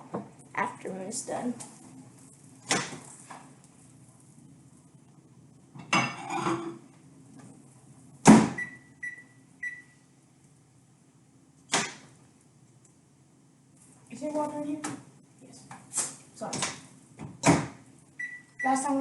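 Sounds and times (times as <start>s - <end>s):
keypad beeps: 8.6s - 10.0s, 18.2s - 18.8s.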